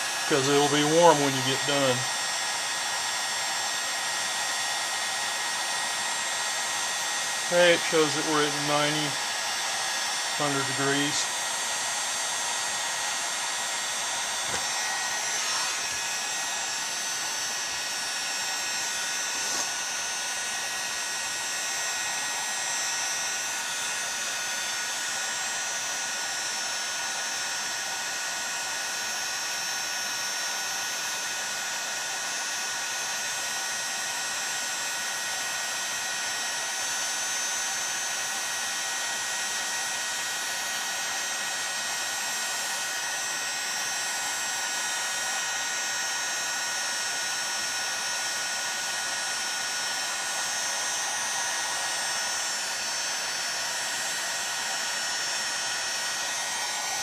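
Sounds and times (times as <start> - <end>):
heat gun blowing: 0.0 - 57.0.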